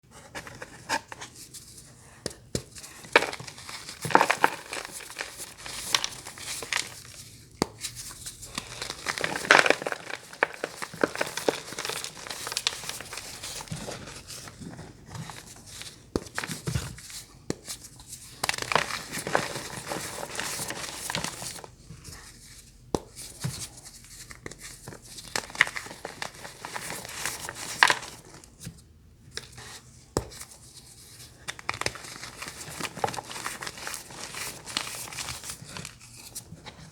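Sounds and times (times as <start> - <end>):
brittle material crinkling and crunching: 3.0 - 7.2, 8.4 - 16.6, 25.3 - 28.4, 31.5 - 36.4.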